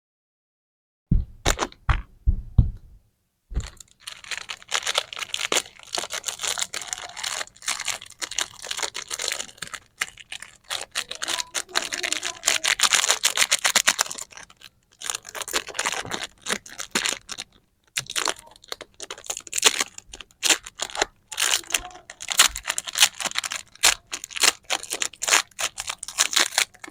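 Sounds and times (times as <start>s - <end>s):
plastic packaging crinkling: 3.5s - 26.9s.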